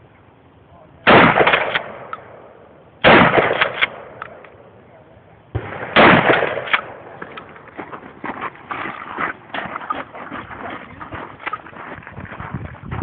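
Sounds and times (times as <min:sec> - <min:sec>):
shotgun firing with echo: 0:01.1 - 0:04.4, 0:05.5 - 0:07.4.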